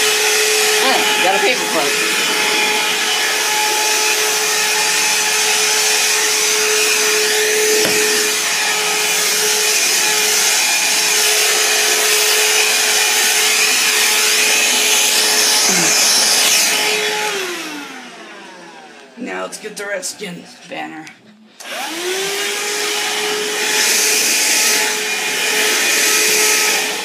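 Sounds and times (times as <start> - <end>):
handheld vacuum running: 0.0 - 19.2, 21.5 - 27.0
brief knock: 7.8 - 8.2.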